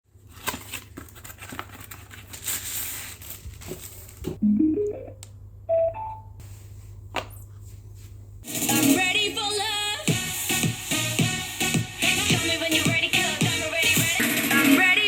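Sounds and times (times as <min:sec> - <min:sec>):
electronic chimes: 0:04.4 - 0:06.4.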